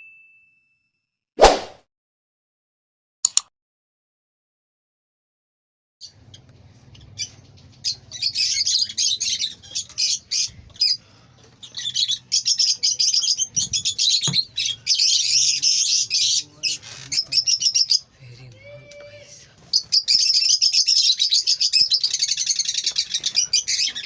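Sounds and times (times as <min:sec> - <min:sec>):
parrots chirping and squawking: 0:06.0 - 0:24.0.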